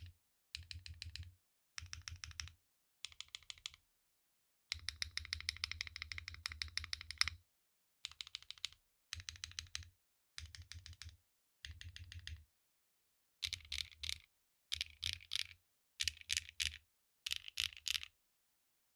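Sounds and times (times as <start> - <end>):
mechanical keyboard typing: 3.1 - 3.8, 8.1 - 9.8, 10.4 - 12.4, 13.4 - 18.1.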